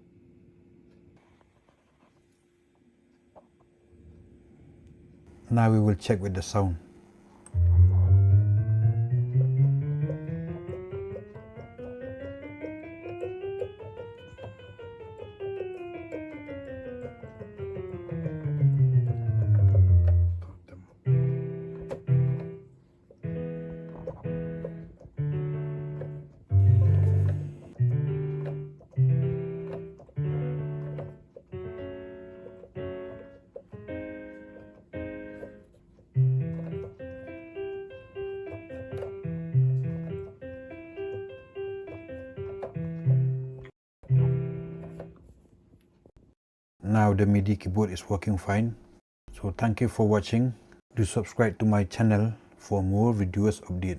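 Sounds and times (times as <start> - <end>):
piano scale: 7.5 - 45.2
low bass note: 7.6 - 9.5, 26.6 - 27.4.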